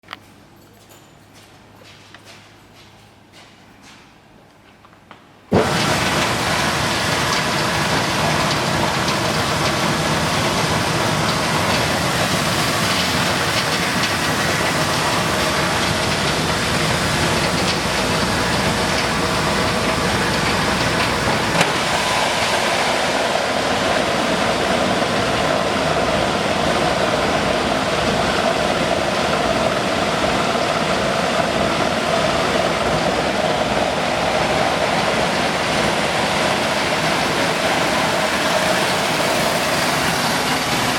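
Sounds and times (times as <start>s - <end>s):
steady hum: 1.4s - 40.9s
milling machine grinding: 5.5s - 31.0s, 33.8s - 40.9s.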